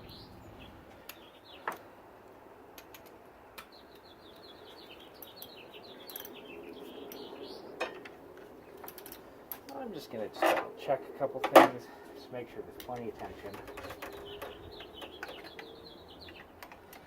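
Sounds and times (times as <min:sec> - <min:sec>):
small bird chirping: 0:03.6 - 0:07.9, 0:12.8 - 0:16.7
faint sharp clicks: 0:07.1 - 0:07.3.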